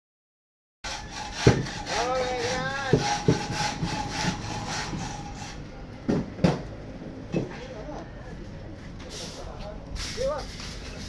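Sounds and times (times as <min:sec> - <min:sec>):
hand saw cutting wood: 0:00.8 - 0:05.6.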